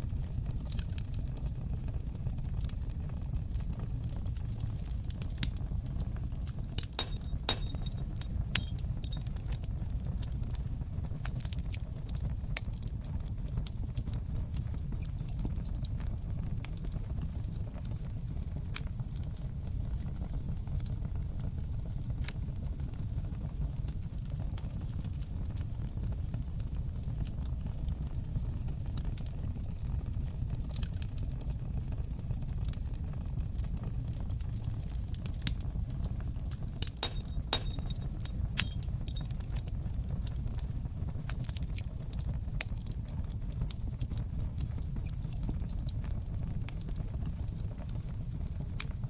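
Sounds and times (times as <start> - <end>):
fire crackling in fireplace: 0.0 - 49.0
loud snap of fire: 0.4 - 20.9, 30.5 - 49.0.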